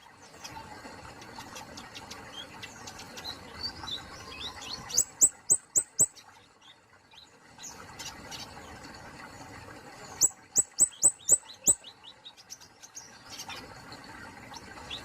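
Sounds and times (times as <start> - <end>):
songbird twittering: 2.7 - 6.8, 10.2 - 13.6.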